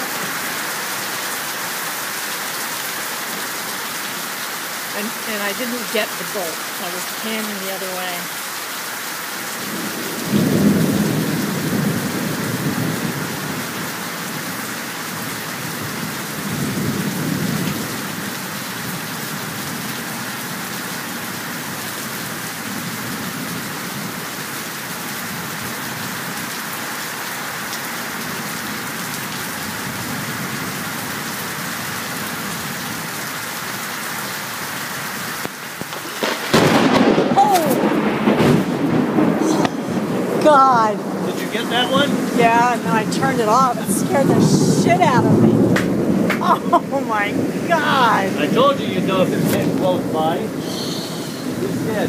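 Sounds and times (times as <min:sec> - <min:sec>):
heavy rain falling: 0:00.0 - 0:52.0
thunder rumbling: 0:09.6 - 0:14.6, 0:35.8 - 0:52.0.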